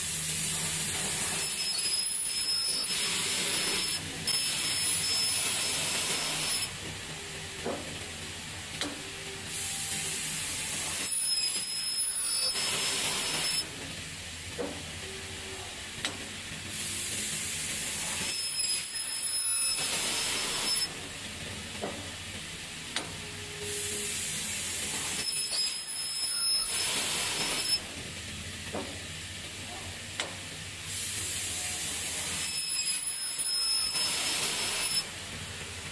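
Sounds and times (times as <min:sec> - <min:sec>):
high-pitched saw ringing: 0:11.1 - 0:13.6, 0:18.3 - 0:20.9, 0:25.2 - 0:27.8, 0:32.4 - 0:35.1
compressed air hissing: 0:23.7 - 0:25.3.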